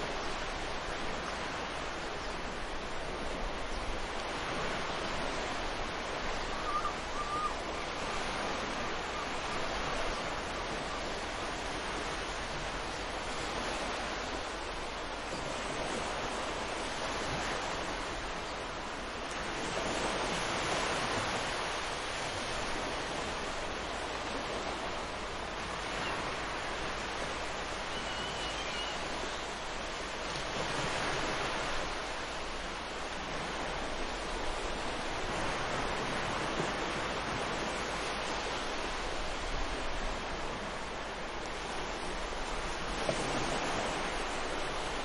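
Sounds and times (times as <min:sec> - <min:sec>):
faint bird call: 0:06.5 - 0:07.7, 0:27.9 - 0:29.1.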